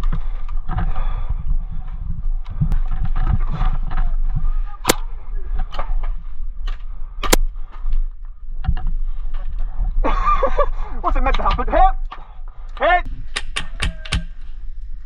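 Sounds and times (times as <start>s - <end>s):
microphone handling and wind noise: 0.0s - 11.8s
sharp cracks: 4.8s - 5.1s, 7.2s - 7.5s.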